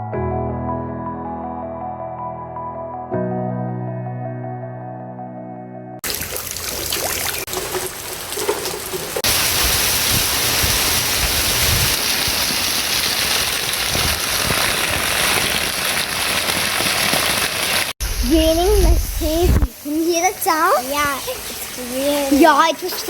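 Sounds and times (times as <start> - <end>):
heavy rain pouring: 6.0 - 23.0.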